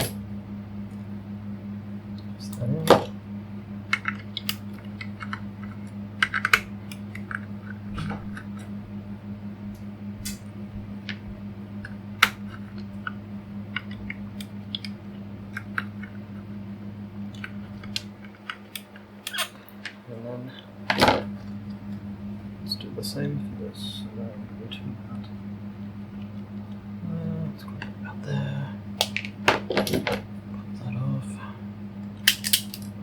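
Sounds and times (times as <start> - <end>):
low electric fan hum: 0.0 - 33.0
clicks and snips of wire work: 32.2 - 32.9.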